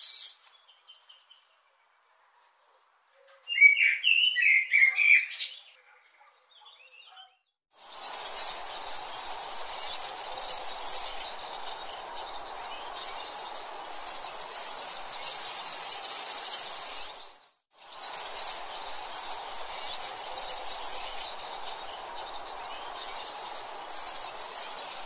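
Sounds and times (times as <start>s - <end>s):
faint bird chirps: 0.0s - 25.0s
high-pitched insect chorus: 7.8s - 25.0s.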